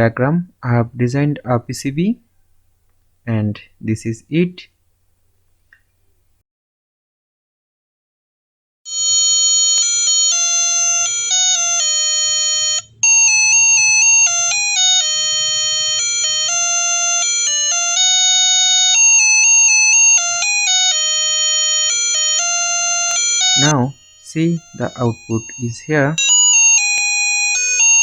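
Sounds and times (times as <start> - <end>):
electronic doorbell melody: 8.9 - 28.0.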